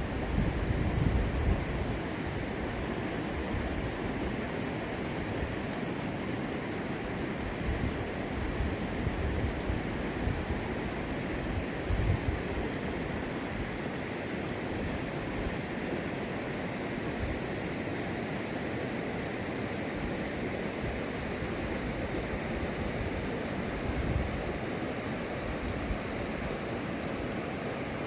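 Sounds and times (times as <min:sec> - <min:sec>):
wind rumble on microphone: 0:00.0 - 0:04.3, 0:07.4 - 0:13.0, 0:21.7 - 0:24.6
stream rushing over rocks: 0:00.0 - 0:28.0.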